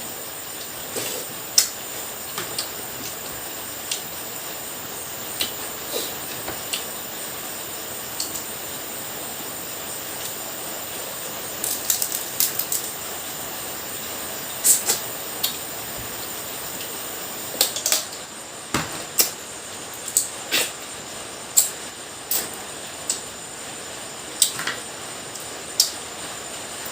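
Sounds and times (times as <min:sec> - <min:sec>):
steady hiss: 0:00.0 - 0:26.9
crab shell cracking: 0:11.6 - 0:12.9.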